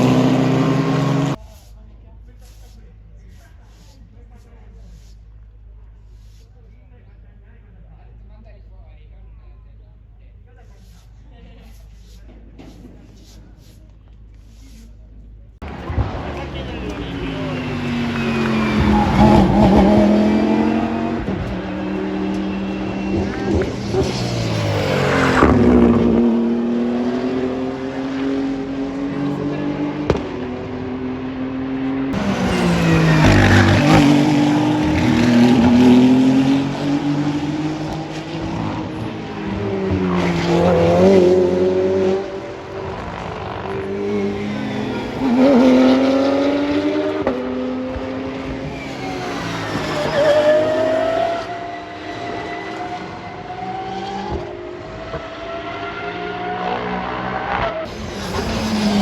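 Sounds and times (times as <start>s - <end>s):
racing cars passing: 0.0s - 1.4s, 15.6s - 59.0s.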